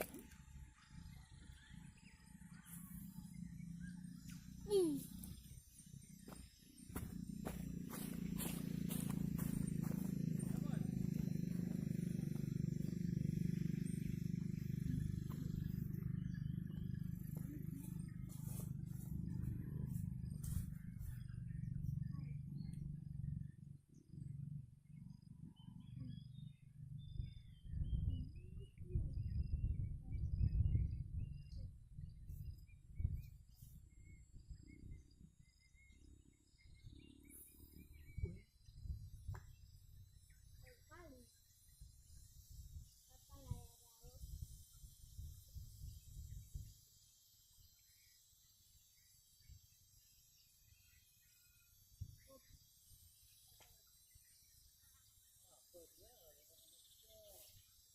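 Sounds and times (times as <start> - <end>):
birds or insects chirping: 0.0 - 57.9
wind buffeting microphone: 27.3 - 33.4.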